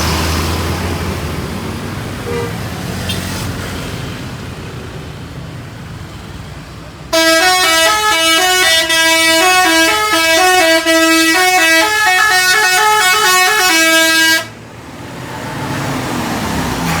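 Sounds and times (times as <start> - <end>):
multi-trumpet air horn tune: 7.1 - 14.6.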